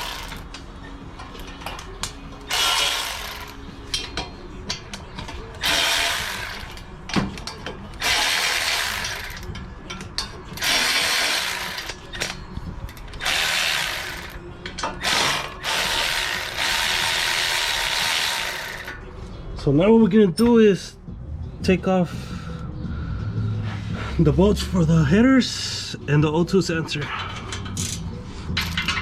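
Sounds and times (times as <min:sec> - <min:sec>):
ratchet wrench clicking: 0:01.2 - 0:19.0.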